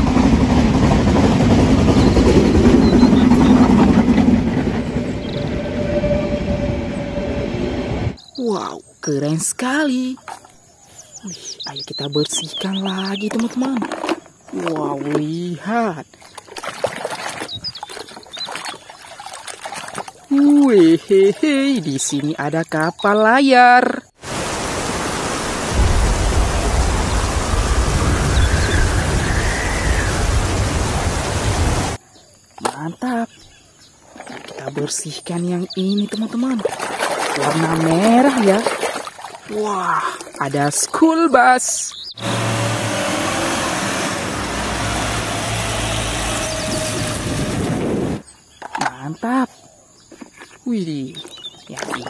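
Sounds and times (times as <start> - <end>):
deep rumble: 0.0 - 8.2, 24.8 - 32.0
water rushing over plastic toy: 24.2 - 32.0, 36.4 - 40.4.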